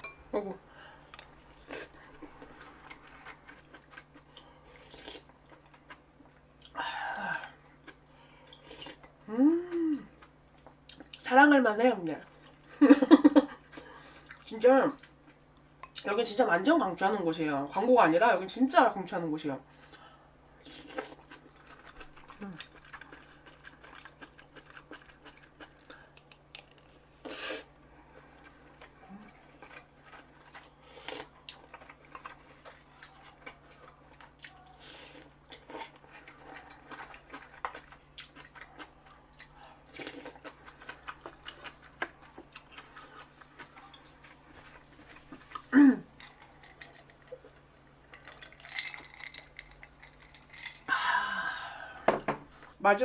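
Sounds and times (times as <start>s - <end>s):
chewing: 0.8s - 6.0s, 13.5s - 16.0s, 19.8s - 50.9s.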